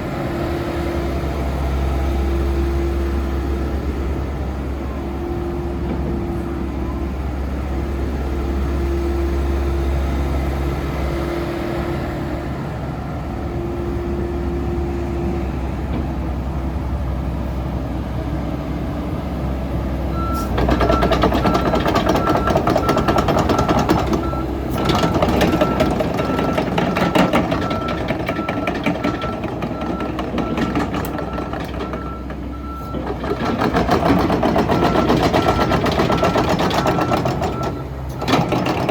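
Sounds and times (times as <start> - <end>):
excavator diesel engine running: 0.0 - 38.9
tracks clattering: 20.3 - 38.9.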